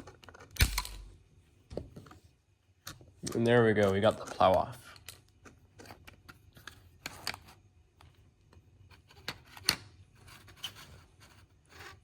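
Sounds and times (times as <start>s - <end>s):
small parts clicking and scraping: 2.8s - 8.2s.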